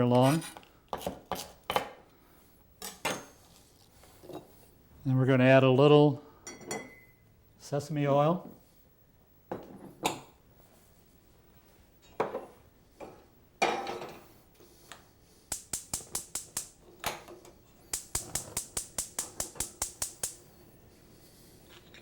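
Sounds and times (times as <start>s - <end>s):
gas igniter clicking: 15.5s - 16.8s, 17.9s - 20.5s.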